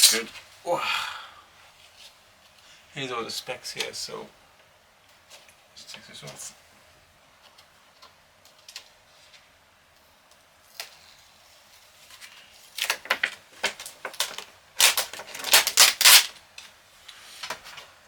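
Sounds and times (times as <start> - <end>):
packaging crinkling and rustling: 10.8 - 16.7.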